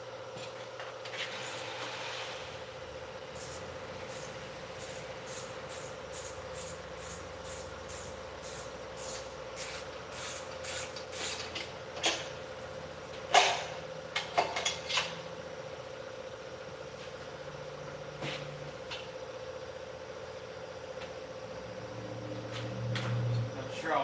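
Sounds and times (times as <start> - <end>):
steady hum: 0.0 - 14.3.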